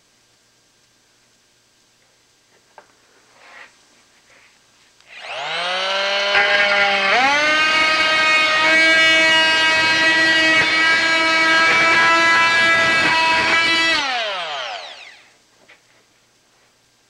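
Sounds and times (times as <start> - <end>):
oscillating multi-tool cutting wood: 5.1 - 15.3.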